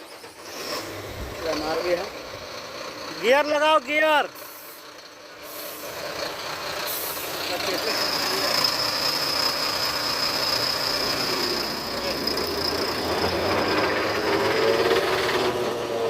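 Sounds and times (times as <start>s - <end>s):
truck differential whine: 0.0s - 16.0s
truck drivetrain running: 0.0s - 16.0s.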